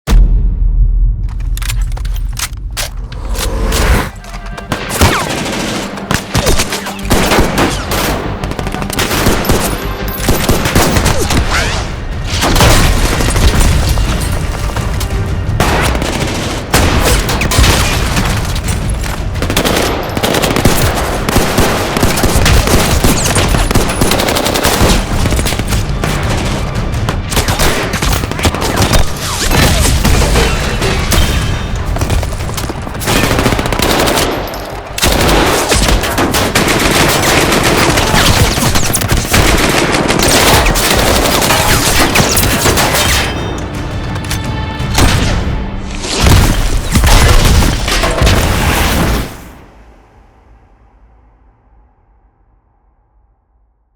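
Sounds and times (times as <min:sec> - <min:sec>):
music: 0:00.1 - 0:53.9
rapid gunshots and automatic fire: 0:04.0 - 0:43.5.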